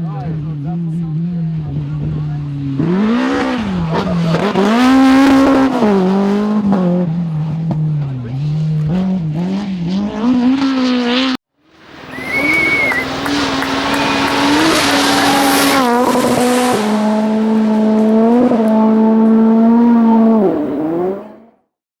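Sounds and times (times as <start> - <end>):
rally car engines revving: 0.0 - 21.6
high squeal: 11.9 - 16.3.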